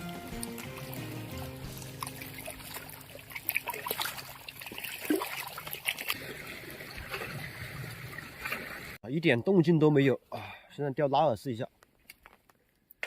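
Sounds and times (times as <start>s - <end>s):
water splashes and drips: 0.0s - 9.0s
water trickling and lapping: 0.0s - 9.0s.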